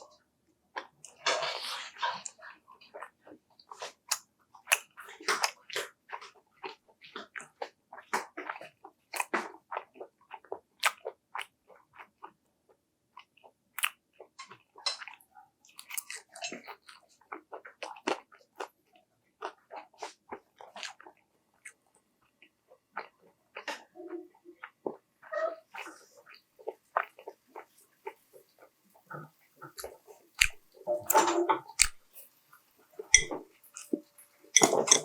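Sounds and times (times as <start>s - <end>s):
crunching fried food: 13.1s - 21.8s, 29.1s - 32.4s.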